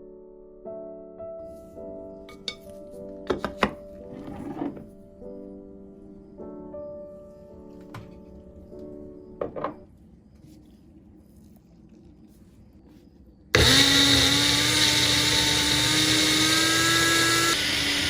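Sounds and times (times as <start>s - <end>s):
food processor whirring: 13.6s - 18.0s.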